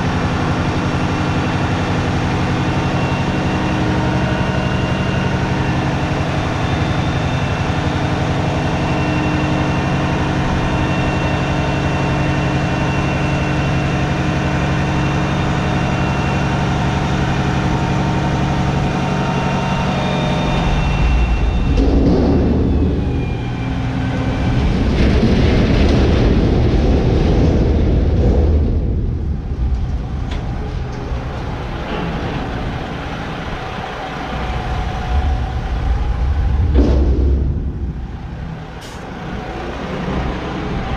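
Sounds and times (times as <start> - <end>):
diesel truck engine running: 0.0 - 40.9.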